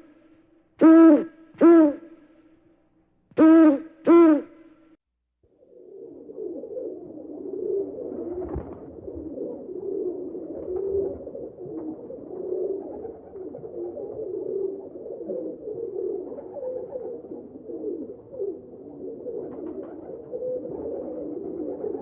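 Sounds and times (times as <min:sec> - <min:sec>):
birds cooing: 0:05.6 - 0:22.0.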